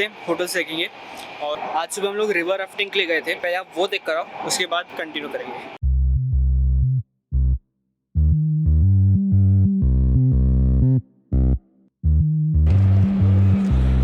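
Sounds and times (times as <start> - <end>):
deep synth bass line: 5.8 - 7.6, 8.2 - 14.0.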